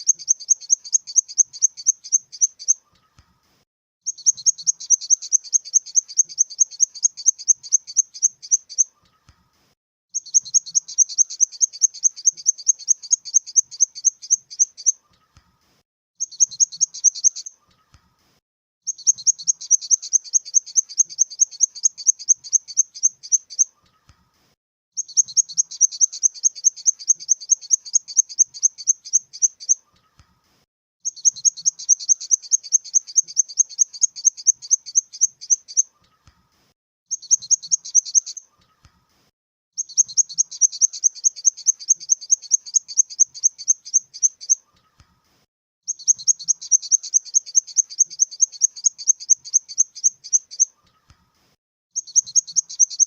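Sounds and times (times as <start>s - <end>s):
grasshopper chirping: 0.0s - 2.8s, 4.1s - 8.8s, 10.2s - 14.9s, 18.9s - 23.6s, 25.0s - 29.8s, 31.1s - 35.8s, 39.8s - 44.6s, 45.9s - 50.7s, 52.0s - 53.0s.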